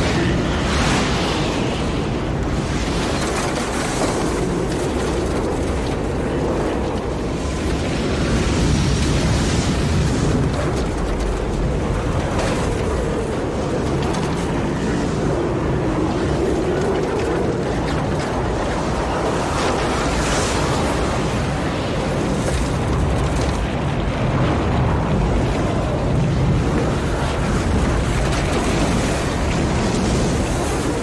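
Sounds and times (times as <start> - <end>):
strong wind howling: 0.0 - 31.0.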